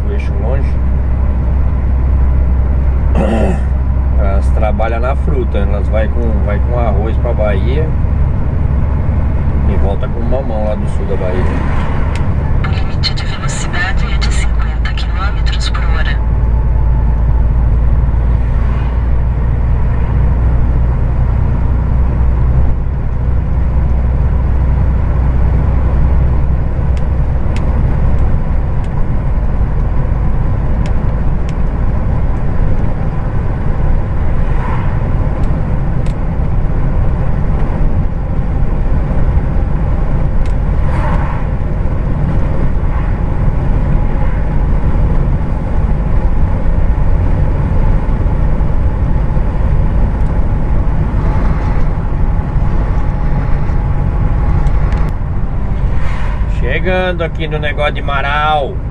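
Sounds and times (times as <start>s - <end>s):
road and tyre noise: 0.0s - 58.9s
truck engine drone: 0.0s - 58.9s.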